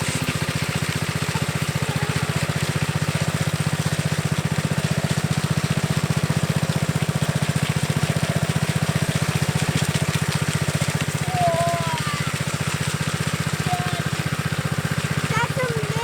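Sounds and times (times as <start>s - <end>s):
small gasoline engine running: 0.0s - 16.0s.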